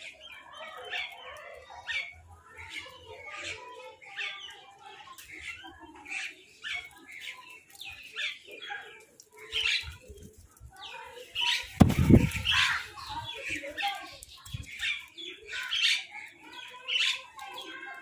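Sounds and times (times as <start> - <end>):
low thumps: 11.8 - 12.5.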